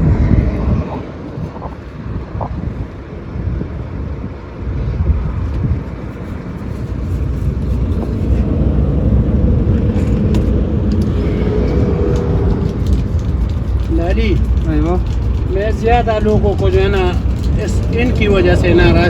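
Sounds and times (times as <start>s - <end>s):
heavy engine rumbling: 4.5s - 19.0s.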